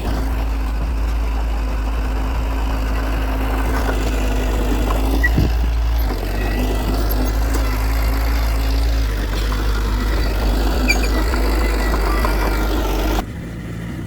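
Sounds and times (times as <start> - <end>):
heavy diesel engine rumbling: 0.0 - 14.0.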